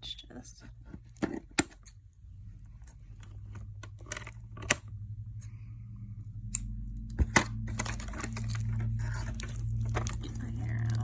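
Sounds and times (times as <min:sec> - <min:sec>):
steady low hum: 0:00.0 - 0:11.0
packaging rustling: 0:07.2 - 0:11.0.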